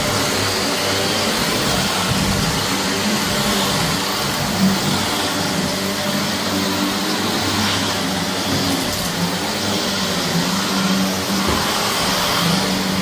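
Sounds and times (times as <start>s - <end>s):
vacuum cleaner running on carpet: 0.0s - 13.0s.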